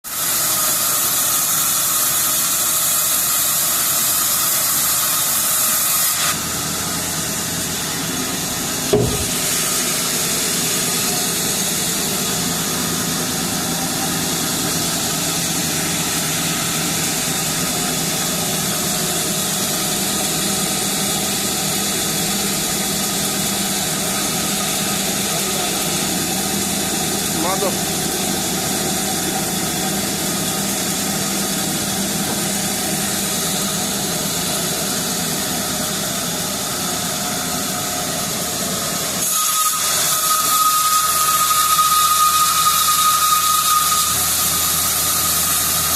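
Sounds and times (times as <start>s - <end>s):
sawmill machinery sawing timber: 0.1s - 45.9s
knock: 8.9s - 9.4s.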